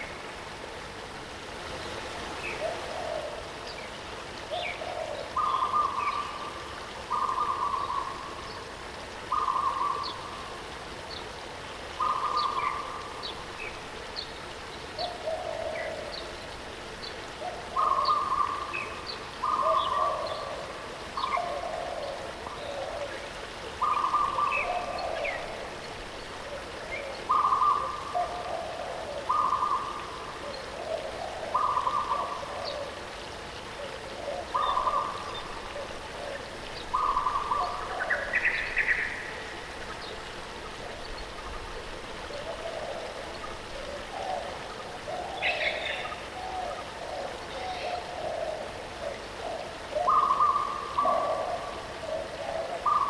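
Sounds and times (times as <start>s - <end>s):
birds hooting: 43.8s - 53.0s.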